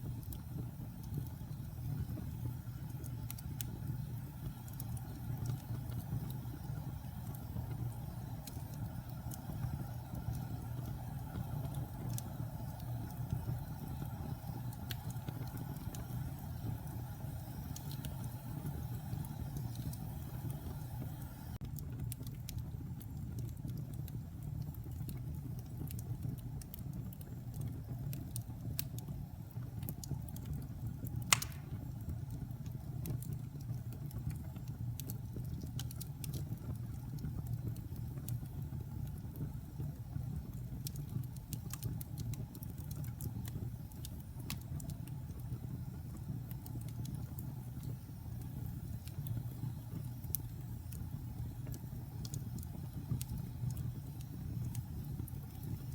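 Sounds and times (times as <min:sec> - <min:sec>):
wood fire burning: 0:00.0 - 0:55.9
loud wood pop: 0:31.3 - 0:31.8.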